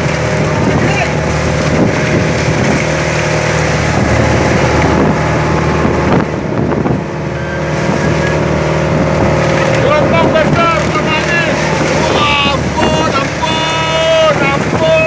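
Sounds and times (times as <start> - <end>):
boat engine running: 0.0 - 15.0
wind noise on microphone: 0.0 - 15.0.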